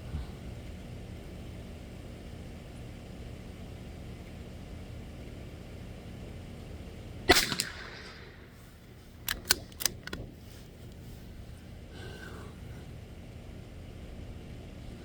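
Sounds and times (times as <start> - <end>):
rifle shot: 7.3 - 10.3
rifle action metallic clicks: 7.3 - 11.0.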